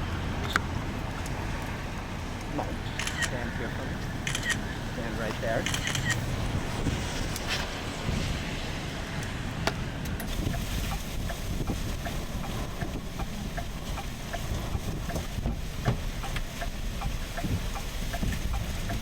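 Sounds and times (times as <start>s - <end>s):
vehicle noise: 0.0s - 19.0s
wind rumble: 0.0s - 19.0s
faint ticking: 10.5s - 19.0s.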